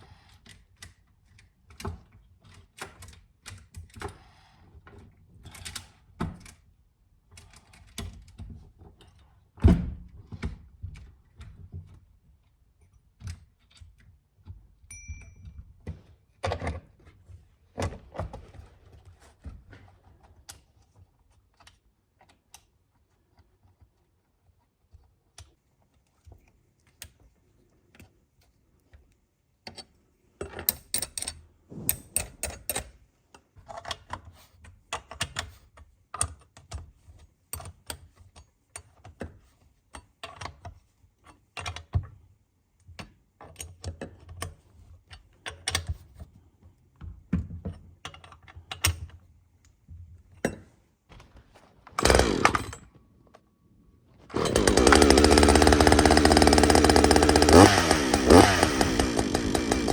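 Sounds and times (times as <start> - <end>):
rasping burst: 52.0 - 52.7, 54.3 - 59.9.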